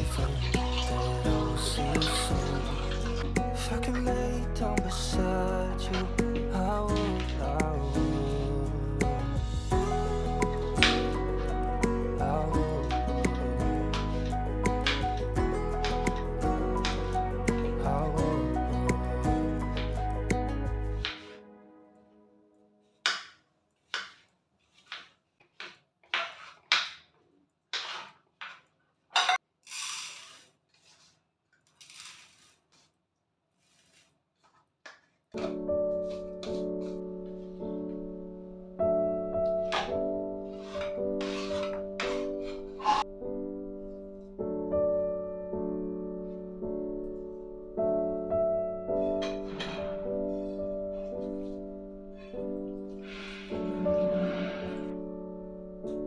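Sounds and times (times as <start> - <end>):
slow piano chords: 0.0 - 22.7, 35.4 - 56.0
dishes and utensils clattering: 29.2 - 29.4, 49.0 - 50.6.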